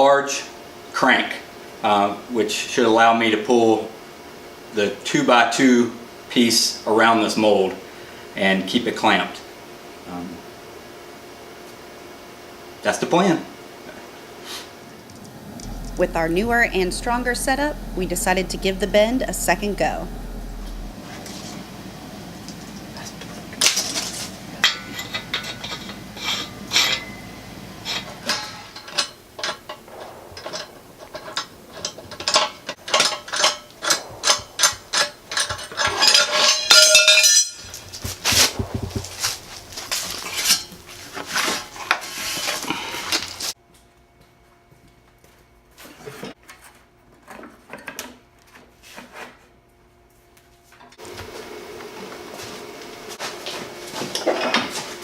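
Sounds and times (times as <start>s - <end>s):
faint hum: 14.8s - 32.8s, 37.6s - 43.4s.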